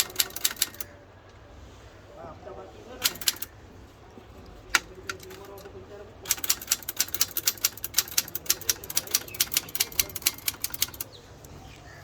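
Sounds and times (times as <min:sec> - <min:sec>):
typewriter keys striking: 0:00.0 - 0:00.9, 0:03.0 - 0:03.5, 0:04.8 - 0:05.7, 0:06.3 - 0:11.1.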